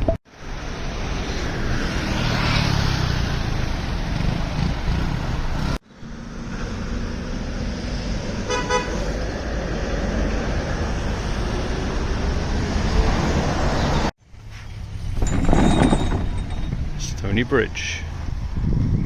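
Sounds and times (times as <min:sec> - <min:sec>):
road traffic: 0:00.0 - 0:19.0
horn toot: 0:08.5 - 0:09.1
wind noise: 0:14.8 - 0:19.0.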